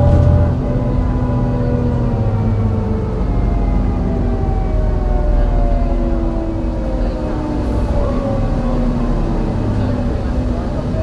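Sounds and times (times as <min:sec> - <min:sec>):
bus engine running rough: 0:00.0 - 0:11.0.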